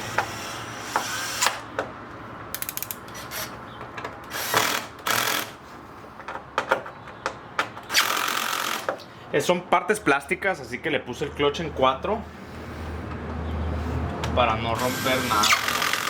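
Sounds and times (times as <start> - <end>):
cordless drill running: 0.0 - 1.6, 4.3 - 5.6, 7.9 - 8.9, 14.8 - 16.0
drill clutch clicking: 2.6 - 3.5, 7.9 - 9.0, 14.8 - 16.0.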